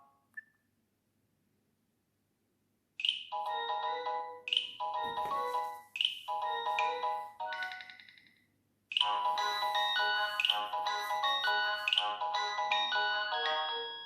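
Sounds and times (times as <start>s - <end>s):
polyphonic ringtone chords: 3.4s - 8.3s, 9.0s - 14.0s.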